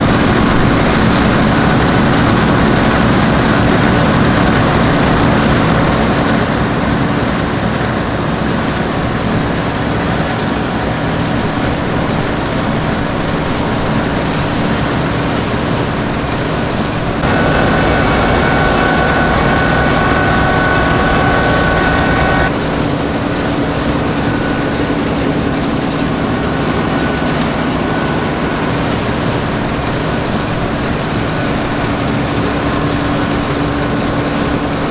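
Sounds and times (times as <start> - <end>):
combine harvester engine drone: 17.2 - 22.5.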